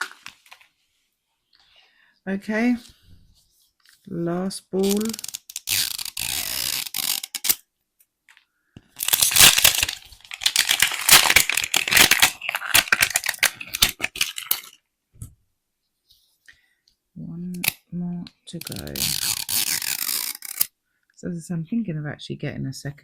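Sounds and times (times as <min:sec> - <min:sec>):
plastic wrap crackling: 0:00.0 - 0:00.6, 0:04.8 - 0:07.6, 0:09.0 - 0:14.8, 0:18.6 - 0:20.7
plastic wrap tearing: 0:00.0 - 0:00.6, 0:04.8 - 0:07.6, 0:09.0 - 0:14.8, 0:18.6 - 0:20.7.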